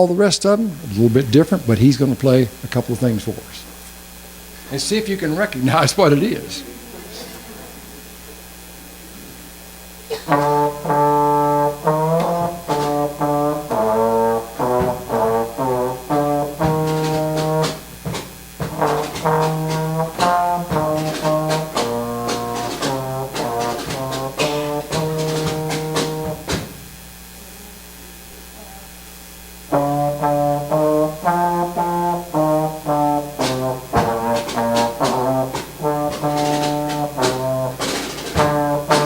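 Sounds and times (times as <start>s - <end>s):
solo trombone melody: 7.8s - 27.6s, 29.4s - 39.0s.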